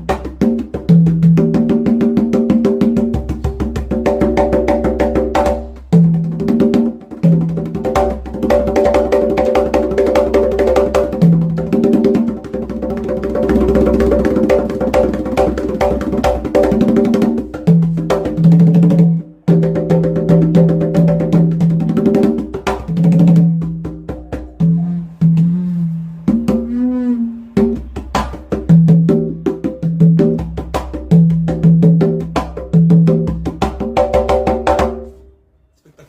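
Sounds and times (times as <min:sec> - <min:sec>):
congas played by hand: 0:00.0 - 0:35.3.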